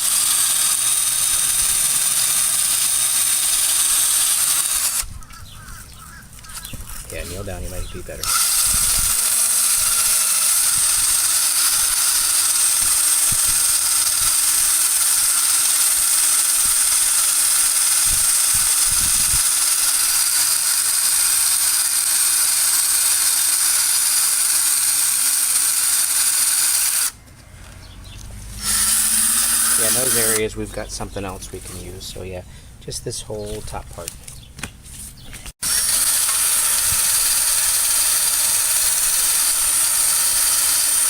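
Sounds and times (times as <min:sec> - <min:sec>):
high-speed power tool whine: 0:00.0 - 0:05.1, 0:06.9 - 0:27.2, 0:28.5 - 0:30.6, 0:35.6 - 0:41.0.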